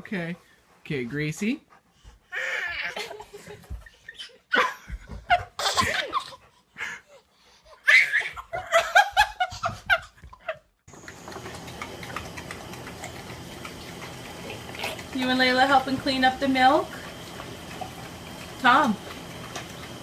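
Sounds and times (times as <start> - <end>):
child laughing: 2.3 - 6.5, 7.7 - 10.7.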